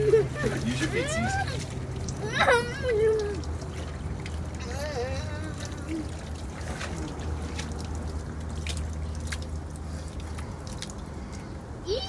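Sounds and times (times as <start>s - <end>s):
sharp drips: 0.0s - 12.0s
water lapping around boat: 0.0s - 12.0s.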